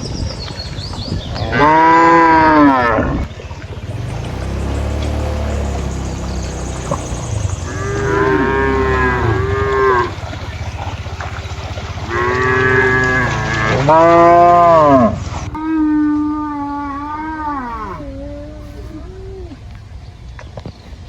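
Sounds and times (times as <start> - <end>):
low rumble: 0.0 - 21.0
cattle mooing: 1.4 - 3.3, 7.6 - 10.3, 12.0 - 19.7.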